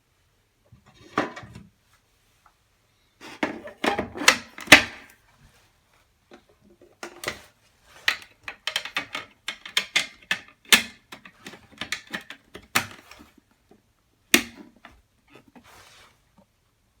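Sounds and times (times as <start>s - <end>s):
fan filter and cover clicking: 8.1s - 13.1s.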